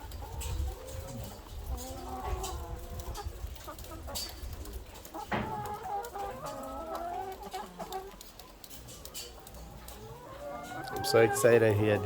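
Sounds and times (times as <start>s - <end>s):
hens clucking: 0.0s - 12.0s.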